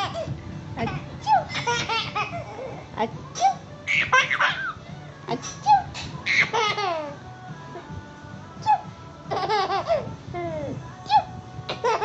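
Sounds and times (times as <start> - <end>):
baby laughing: 0.9 - 2.8, 3.4 - 4.8, 5.6 - 7.2, 9.3 - 12.0.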